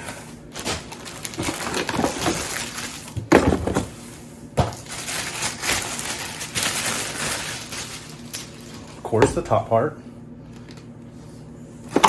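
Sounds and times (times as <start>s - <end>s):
packaging rustling and clattering: 0.5s - 4.0s, 4.6s - 9.1s.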